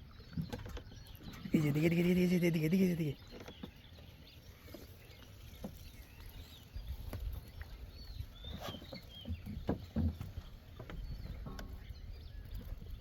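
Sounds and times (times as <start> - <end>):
low water sounds: 0.0 - 13.0
wooden boat knocking: 9.0 - 12.8.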